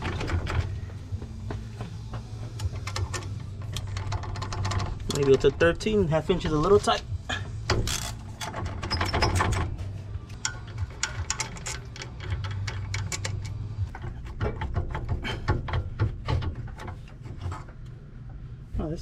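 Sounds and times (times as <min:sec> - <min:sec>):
hand ratchet clicking: 0:10.3 - 0:14.1.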